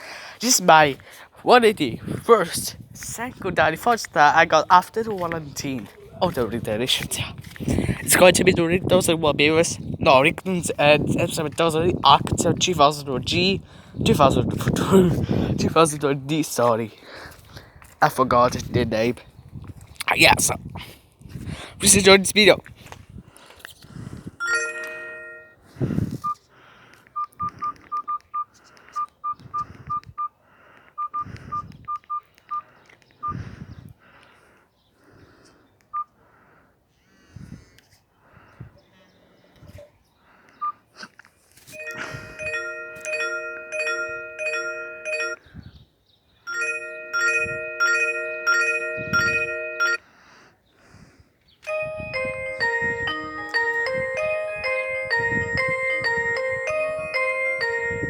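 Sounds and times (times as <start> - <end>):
chime-like ringtone: 24.4 - 25.6, 41.8 - 45.4, 46.5 - 50.0, 51.7 - 58.0
melodic ringtone: 24.4 - 25.6, 41.8 - 45.4, 46.5 - 50.0, 51.7 - 58.0
short electronic phone beeps: 27.2 - 30.3, 31.0 - 32.6, 41.8 - 45.4, 46.5 - 50.0, 51.7 - 54.3.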